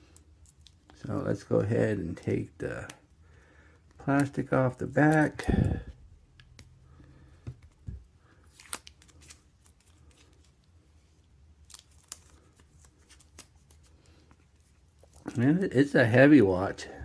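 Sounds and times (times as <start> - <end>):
plastic film crinkling and tearing: 8.4 - 10.7, 11.6 - 15.3.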